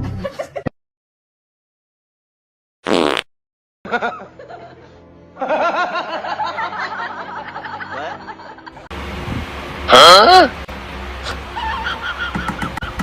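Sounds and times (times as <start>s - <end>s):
laughing: 3.9s - 8.9s.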